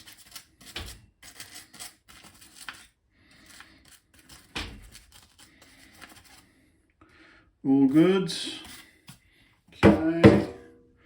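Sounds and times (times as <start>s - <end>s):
scratchy brushing on circuit board: 0.0s - 6.6s.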